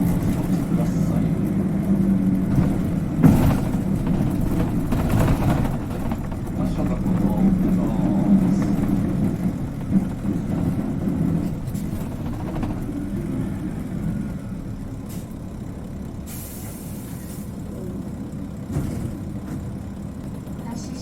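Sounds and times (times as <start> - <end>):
bus engine running: 0.0 - 21.0
air brake hiss: 16.3 - 17.6.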